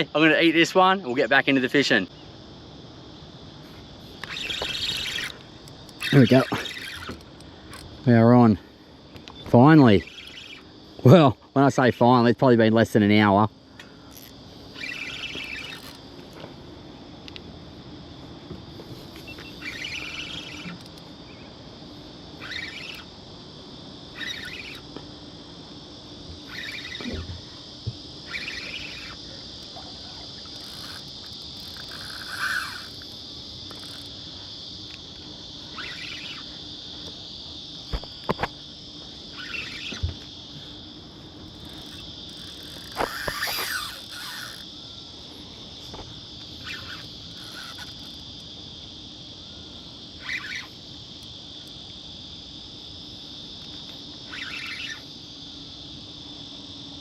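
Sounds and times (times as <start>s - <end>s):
high-pitched insect drone: 0.0s - 57.0s
bird calling: 4.1s - 7.8s, 9.1s - 10.8s, 13.8s - 16.0s, 19.0s - 21.6s, 22.3s - 23.2s, 24.1s - 25.0s, 26.4s - 27.6s, 28.2s - 34.2s, 35.5s - 37.1s, 39.2s - 40.7s, 41.5s - 45.5s, 46.5s - 48.3s, 49.4s - 50.8s, 54.2s - 55.1s.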